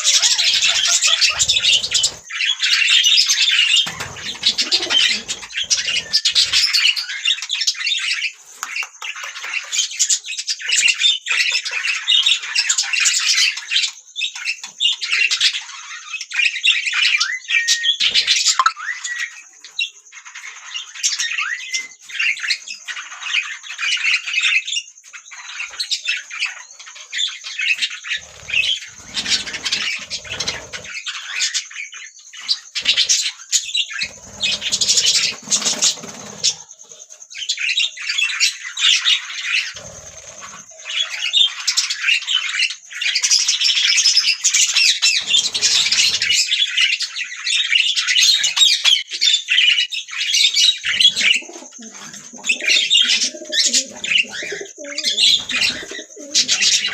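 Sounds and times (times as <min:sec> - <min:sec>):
budgerigars chattering: 0:00.0 - 0:56.9
thin high tone: 0:18.6 - 0:19.0.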